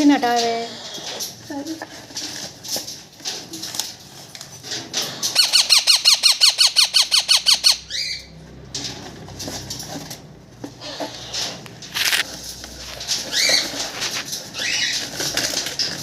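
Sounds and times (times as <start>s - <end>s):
parakeet chick squeaking: 5.3s - 8.3s, 13.1s - 15.1s.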